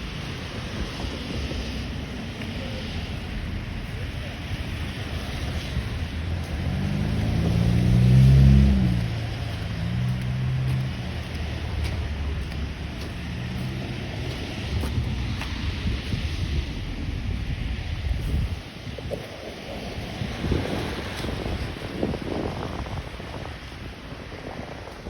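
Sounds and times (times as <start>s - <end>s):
wind buffeting microphone: 0.0s - 25.0s
vehicle engine passing: 0.8s - 18.6s.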